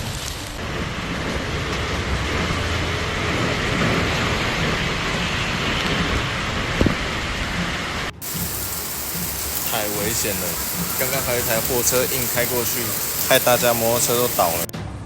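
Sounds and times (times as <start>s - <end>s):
heavy rain and wind: 8.2s - 14.7s.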